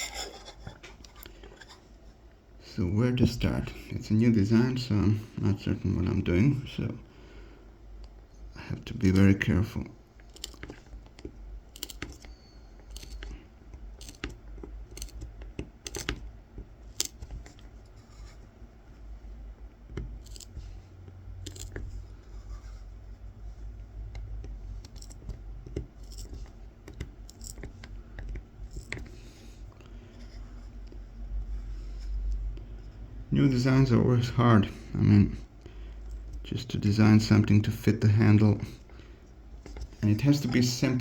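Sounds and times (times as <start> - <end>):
knife scratching wood: 0.0 - 1.8, 11.8 - 13.3, 14.0 - 16.2, 20.2 - 20.6, 24.8 - 27.7.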